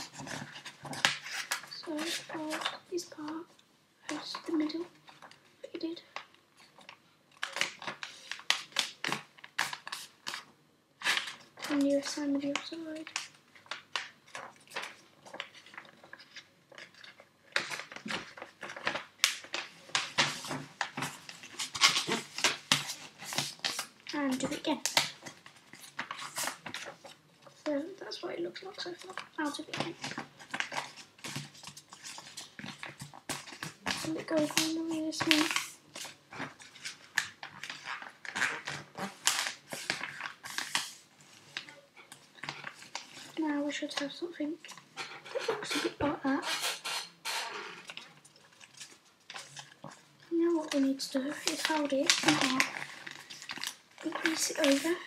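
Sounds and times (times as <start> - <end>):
paper folding and crackling: 0.0 - 55.0.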